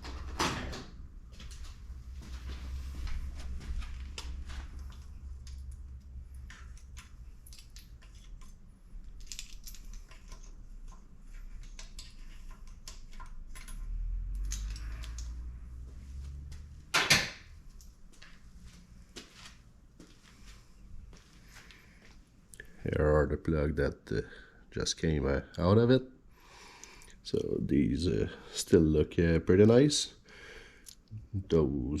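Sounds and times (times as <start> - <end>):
low steady hum: 0.0 - 32.0
metal tools clinking: 7.4 - 10.6.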